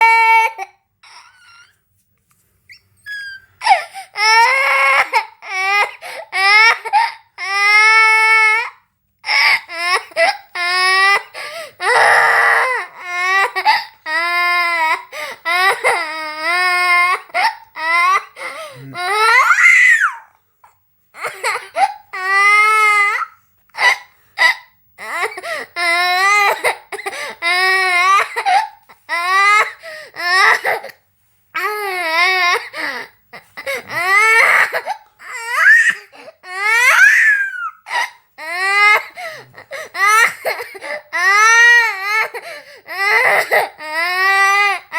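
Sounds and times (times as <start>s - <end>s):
young child crying: 33.8s - 44.9s
child gasping for breath: 42.4s - 42.9s.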